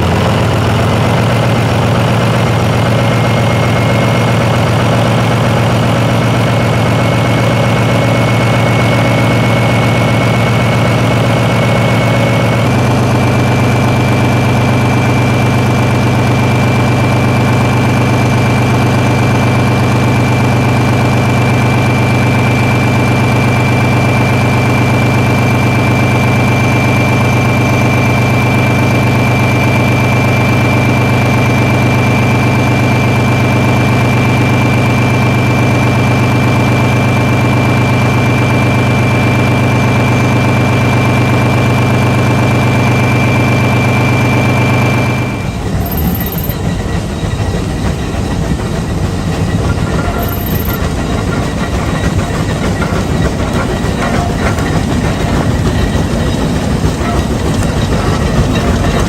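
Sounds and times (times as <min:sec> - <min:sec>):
large engine idling: 0:00.0 - 0:59.0
high-pitched whine: 0:42.5 - 0:56.4.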